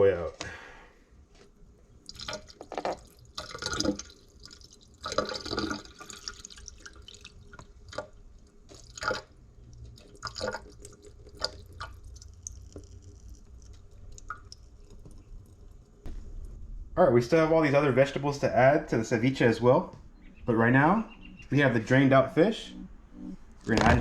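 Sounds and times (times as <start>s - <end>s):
liquid dripping: 1.9s - 16.6s.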